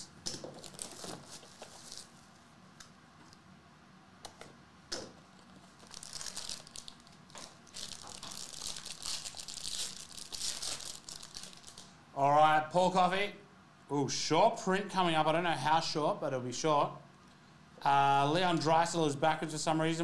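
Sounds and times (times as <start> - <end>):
plastic wrapping crinkling: 0.0 - 2.4, 5.4 - 12.0.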